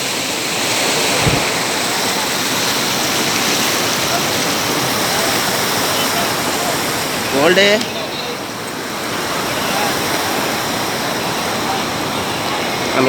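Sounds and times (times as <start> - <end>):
short low thump: 1.2 - 1.8.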